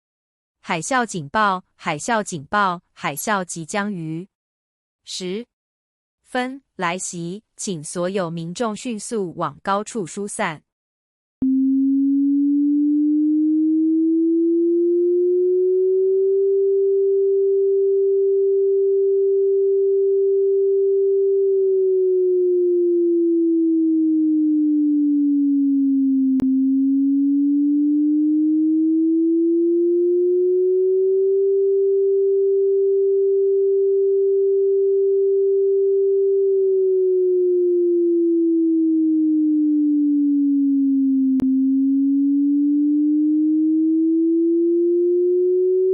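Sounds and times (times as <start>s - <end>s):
rising and falling warning siren: 11.4s - 18.6s, 20.4s - 33.6s, 35.4s - 45.9s.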